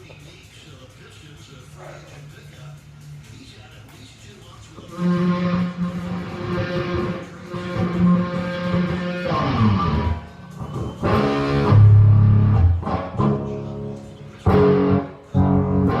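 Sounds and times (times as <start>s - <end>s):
electric guitar playing: 4.9s - 16.0s.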